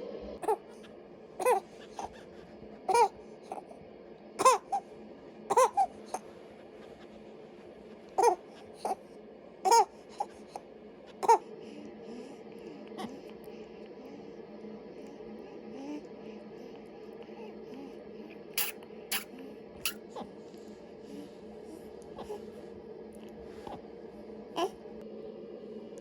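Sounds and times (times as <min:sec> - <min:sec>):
baby crying: 0:00.4 - 0:00.8, 0:01.4 - 0:02.1, 0:02.9 - 0:03.7, 0:04.4 - 0:04.8, 0:05.5 - 0:06.2, 0:08.2 - 0:09.0, 0:09.6 - 0:10.5, 0:11.2 - 0:11.4, 0:18.6 - 0:20.0, 0:24.6 - 0:24.8.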